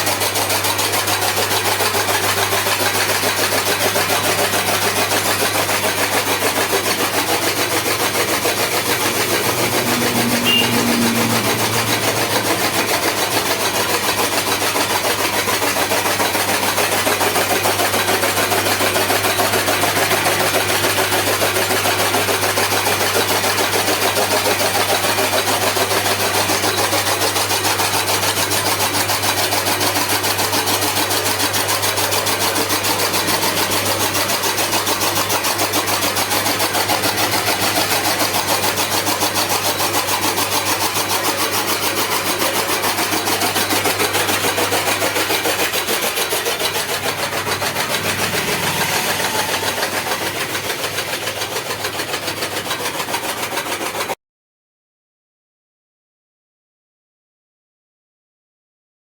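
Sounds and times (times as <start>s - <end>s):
straw-cutting machine running: 0.0s - 54.2s.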